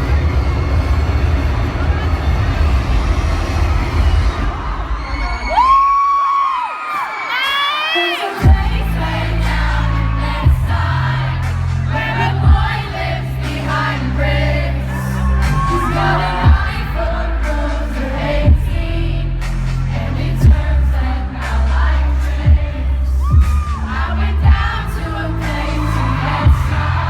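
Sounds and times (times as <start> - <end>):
deep bass synth: 0.0 - 5.6, 8.4 - 27.0
crowd noise: 0.0 - 27.0
live pop music: 0.0 - 27.0
person singing: 7.4 - 27.0.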